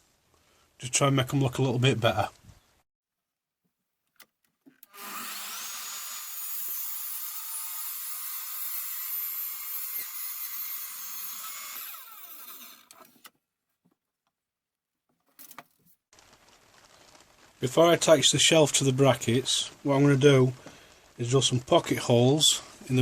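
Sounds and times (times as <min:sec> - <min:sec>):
electric power saw cutting wood: 0:04.8 - 0:13.2.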